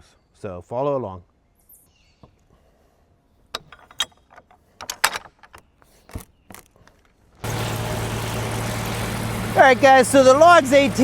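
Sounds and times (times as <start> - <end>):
metallic clicks and knocks: 3.5 - 5.7
engine low hum: 7.4 - 11.0.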